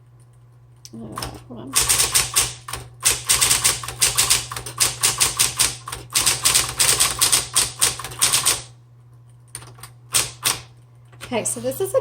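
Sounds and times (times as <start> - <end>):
electric typewriter typing: 1.1 - 8.7, 9.5 - 11.4
typewriter motor humming: 1.1 - 8.7, 9.6 - 10.7.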